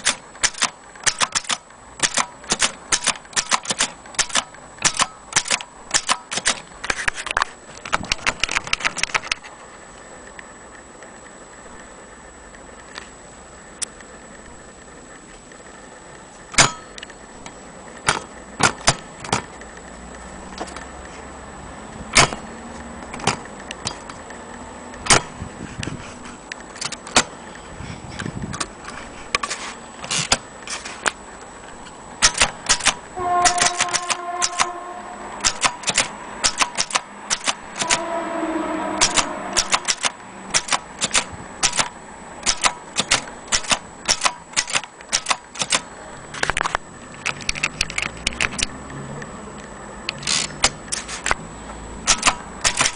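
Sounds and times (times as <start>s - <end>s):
typewriter key strikes: 32.2s - 34.7s, 35.4s - 38.0s, 39.0s - 45.8s, 52.1s - 52.9s.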